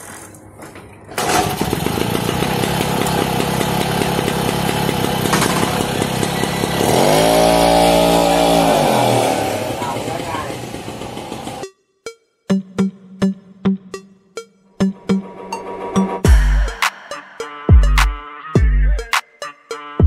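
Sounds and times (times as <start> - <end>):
moped engine puttering: 1.1 - 11.6.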